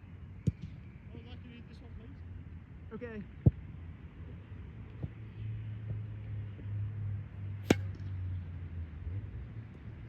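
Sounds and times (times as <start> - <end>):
boot kicking a ball: 7.7 - 7.9.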